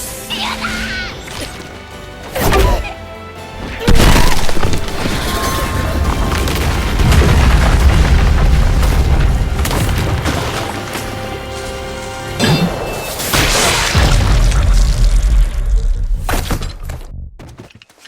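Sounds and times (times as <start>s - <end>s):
background music: 0.0s - 14.3s.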